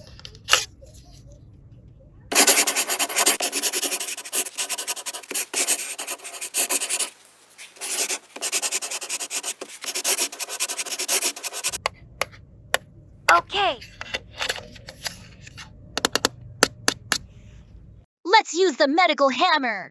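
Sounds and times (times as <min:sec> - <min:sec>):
scratchy rubbing strokes: 0:02.3 - 0:11.8.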